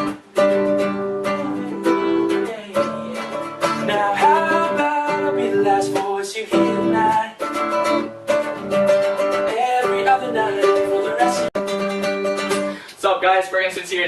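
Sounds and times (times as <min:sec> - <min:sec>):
strummed guitar: 0:00.0 - 0:14.0
person singing: 0:01.2 - 0:07.9, 0:09.2 - 0:12.8.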